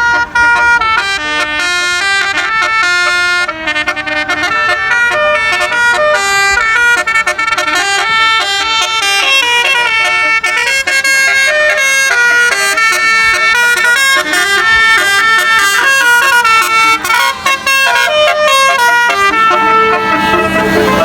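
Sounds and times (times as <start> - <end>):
bus horn playing a tune: 0.0 - 21.0.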